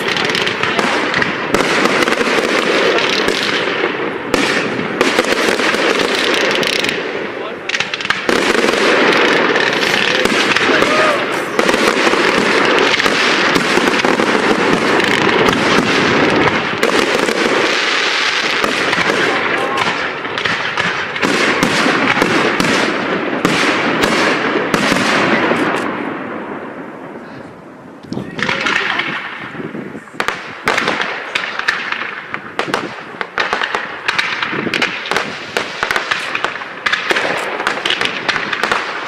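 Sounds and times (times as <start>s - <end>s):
fireworks crackling and bursting: 0.0s - 39.0s.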